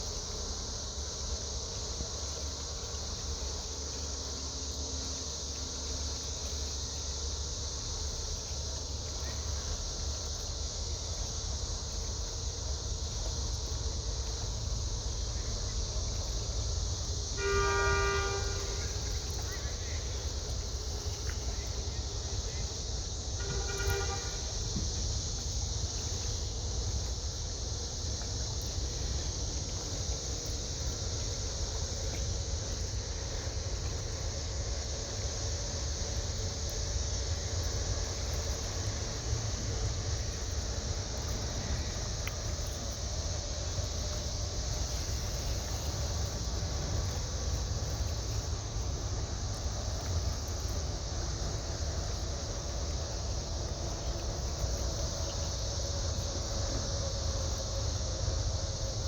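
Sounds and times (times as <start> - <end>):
boat engine low rumble: 0.0 - 59.0
constant high hiss: 0.0 - 59.0.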